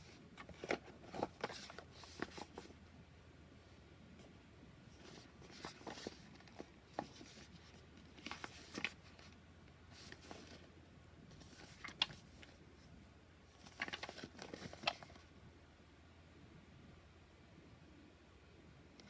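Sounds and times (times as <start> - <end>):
card and paper rustling: 0.0 - 2.8, 4.9 - 10.7, 11.3 - 12.6, 13.5 - 15.3.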